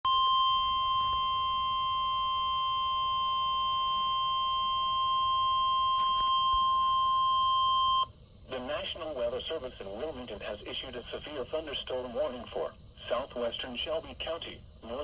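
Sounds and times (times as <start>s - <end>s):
steady warning alarm tone: 0.1s - 8.1s.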